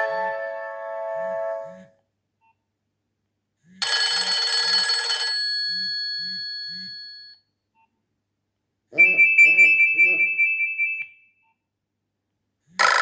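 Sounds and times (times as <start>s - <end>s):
phone ringtone melody: 3.8s - 7.4s.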